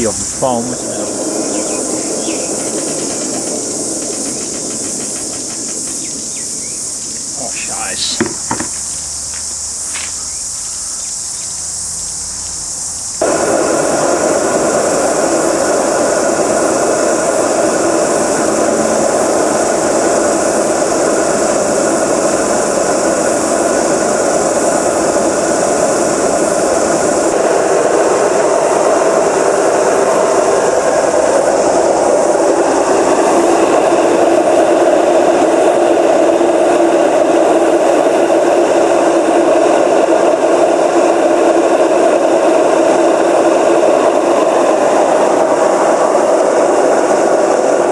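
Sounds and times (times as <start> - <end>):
washing machine whirring drone: 0.0 - 47.9.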